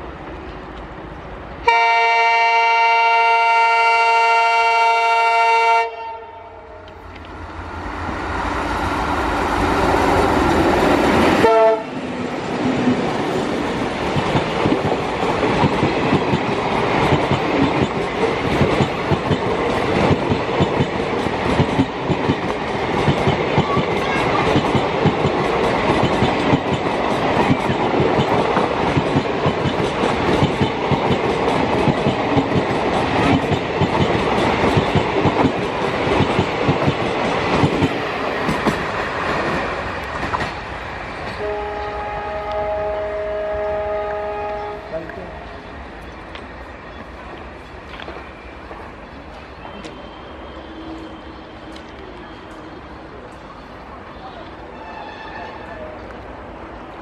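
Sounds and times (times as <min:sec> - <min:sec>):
locomotive horn blast: 0:01.7 - 0:06.9, 0:11.4 - 0:11.9, 0:41.4 - 0:44.9
locomotive passing: 0:06.5 - 0:57.0
train wheels clattering: 0:12.8 - 0:41.4.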